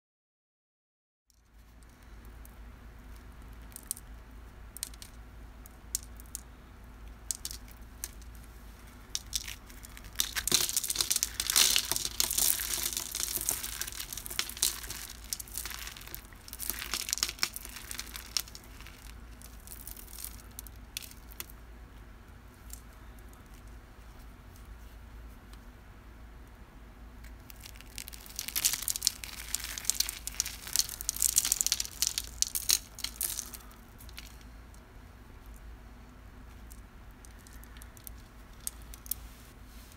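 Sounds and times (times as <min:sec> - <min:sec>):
cornstarch crunching: 0:09.1 - 0:21.4, 0:27.4 - 0:34.4.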